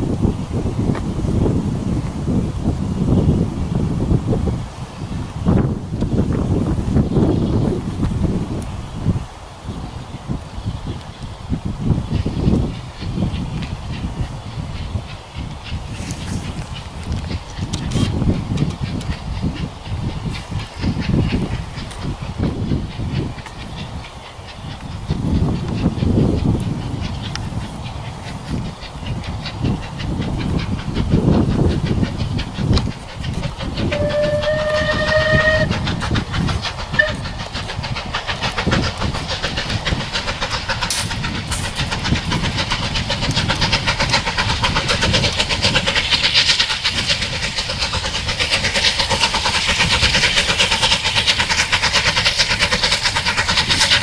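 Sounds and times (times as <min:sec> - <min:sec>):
steam locomotive exhaust beats: 0:00.0 - 0:54.0
train wheels on rails: 0:00.0 - 0:54.0
locomotive whistle: 0:33.8 - 0:35.9, 0:36.9 - 0:37.3.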